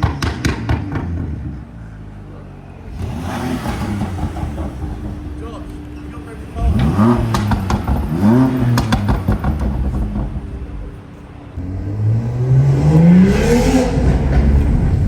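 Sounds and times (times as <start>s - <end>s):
exhaust pops and crackles: 0.0s - 1.9s, 2.6s - 11.8s
car engine revving: 0.0s - 15.0s.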